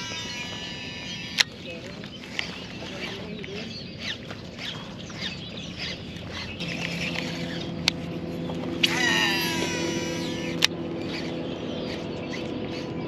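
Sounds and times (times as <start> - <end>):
sharp clicks: 0.0 - 2.5, 8.8 - 12.9
birds chirping: 0.0 - 13.0
low steady hum: 0.0 - 13.0.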